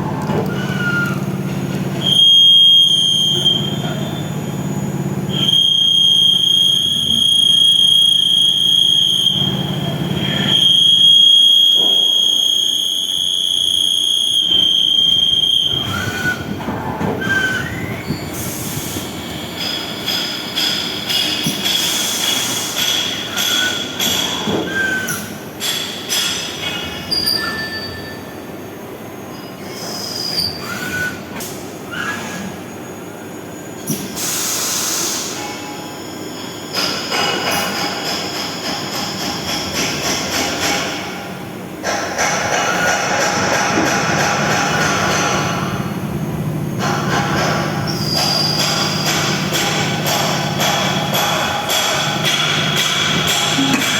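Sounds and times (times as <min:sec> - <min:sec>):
lathe cutting metal squeal: 0:00.4 - 0:01.4, 0:05.3 - 0:25.9, 0:26.9 - 0:28.3, 0:29.4 - 0:31.2, 0:46.8 - 0:53.9.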